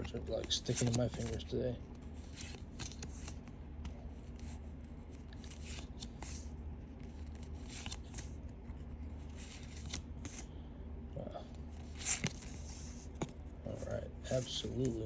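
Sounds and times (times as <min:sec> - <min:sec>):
steady low hum: 0:00.0 - 0:15.0
trading cards swishing: 0:11.6 - 0:15.0.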